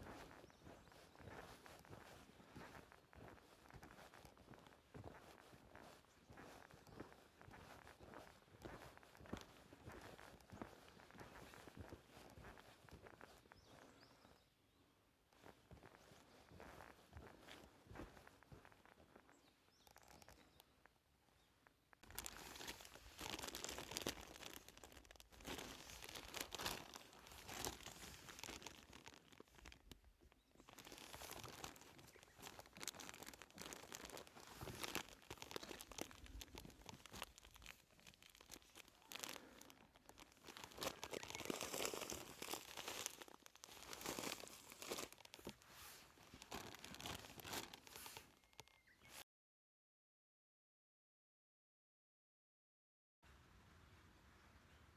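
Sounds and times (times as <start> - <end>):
crinkling and rustling: 16.8 - 20.9, 21.6 - 49.2.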